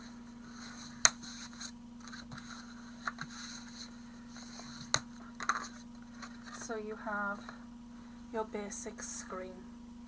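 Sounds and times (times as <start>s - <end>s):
card rustling and creasing: 0.0s - 6.7s
electrical hum: 0.0s - 10.0s.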